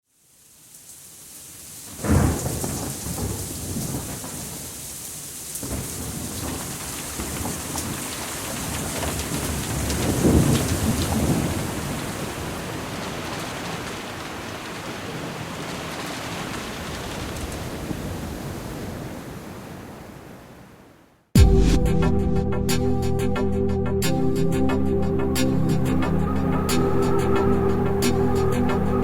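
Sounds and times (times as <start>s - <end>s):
steady rain: 0.0s - 21.2s, 25.4s - 29.0s
thunder rumbling: 2.0s - 4.8s, 5.6s - 13.9s, 21.4s - 29.0s.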